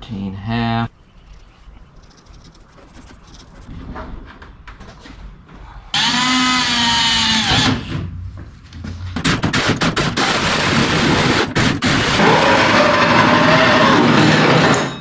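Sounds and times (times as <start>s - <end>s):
drill grinding into sheet metal: 6.0s - 7.9s, 9.4s - 15.0s
power drill whining: 6.0s - 7.9s.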